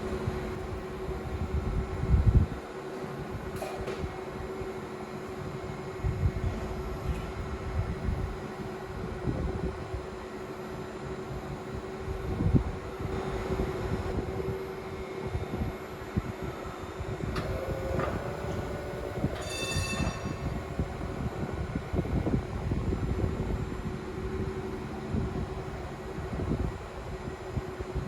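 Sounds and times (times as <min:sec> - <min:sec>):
tram rumbling on rails: 0:06.0 - 0:28.0
short high ringing: 0:19.4 - 0:20.6.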